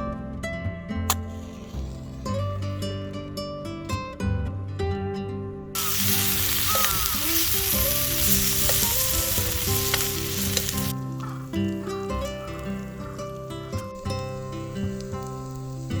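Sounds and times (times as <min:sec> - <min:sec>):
background music: 0:00.0 - 0:16.0
food sizzling in a pan: 0:05.8 - 0:16.0.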